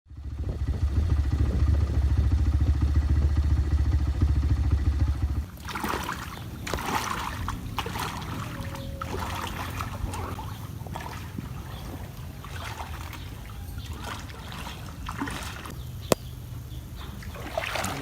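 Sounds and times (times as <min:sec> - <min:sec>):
engine running with fast pulse: 0:00.1 - 0:05.6
water splashing and trickling: 0:05.3 - 0:18.0.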